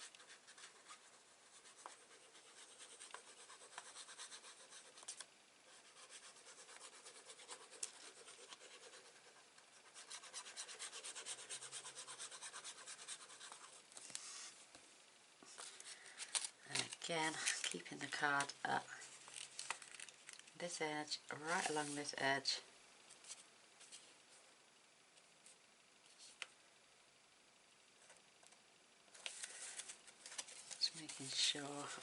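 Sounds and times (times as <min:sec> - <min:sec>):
card stock rubbing and scratching: 0:00.0 - 0:14.5.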